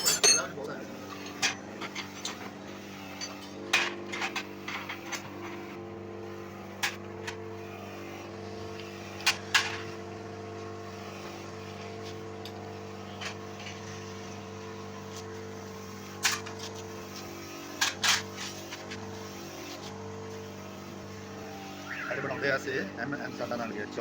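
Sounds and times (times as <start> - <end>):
machine humming: 20.2 - 24.0.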